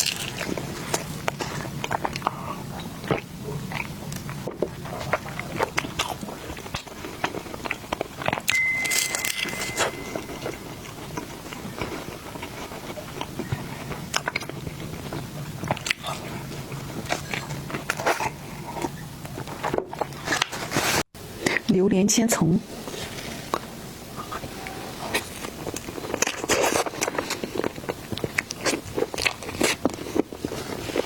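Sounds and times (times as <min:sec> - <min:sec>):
biting and chewing food: 0:00.0 - 0:21.7, 0:22.7 - 0:31.0
short high tone: 0:08.5 - 0:10.8.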